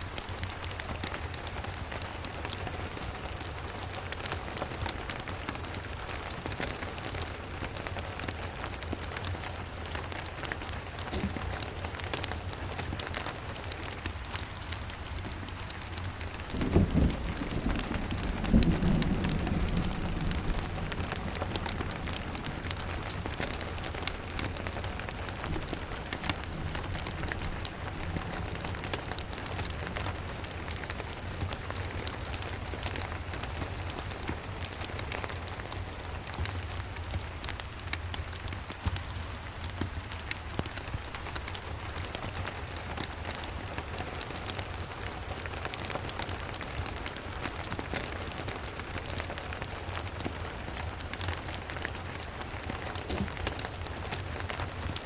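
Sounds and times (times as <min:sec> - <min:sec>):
steady rain: 0:00.0 - 0:55.0
wood fire crackling: 0:00.0 - 0:55.0
distant thunder rumbling: 0:16.3 - 0:29.4.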